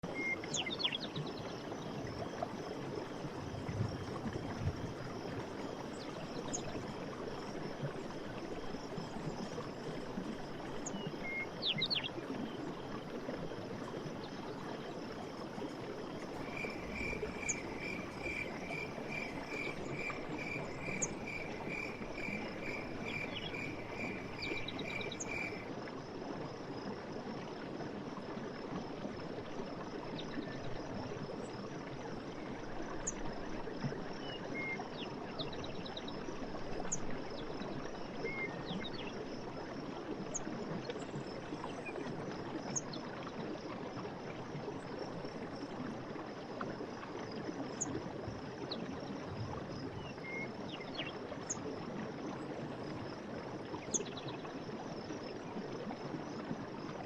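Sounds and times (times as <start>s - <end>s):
stream water running: 0.0s - 57.0s
insects trilling: 1.7s - 25.7s
birds chirping: 16.3s - 25.6s.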